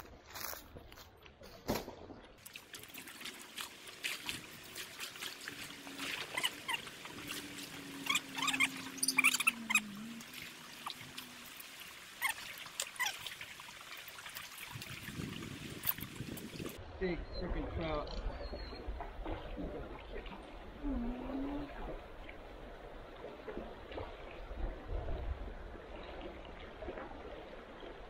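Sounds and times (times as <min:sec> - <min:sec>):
stream water splashing: 0:01.5 - 0:28.0.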